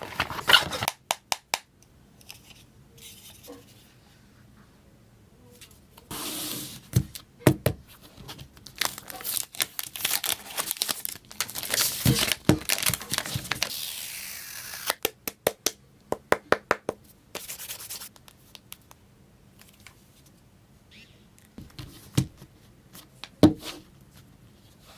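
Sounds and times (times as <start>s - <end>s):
packaging tearing and rustling: 8.4s - 15.0s.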